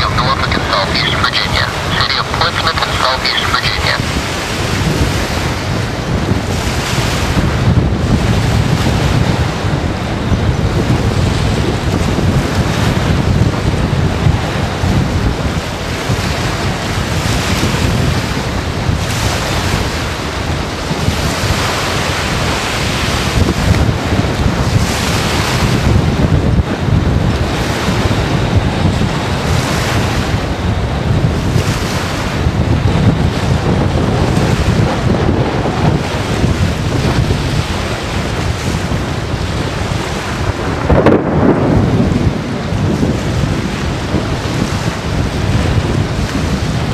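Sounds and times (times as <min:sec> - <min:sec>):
storm wind buffeting microphone: 0:00.0 - 0:46.9.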